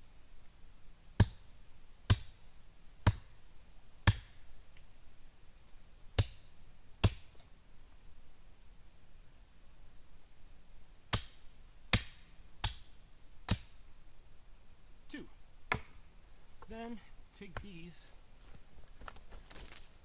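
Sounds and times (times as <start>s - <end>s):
stake pounded into ground: 11.1s - 12.9s, 13.5s - 13.8s, 15.7s - 16.0s.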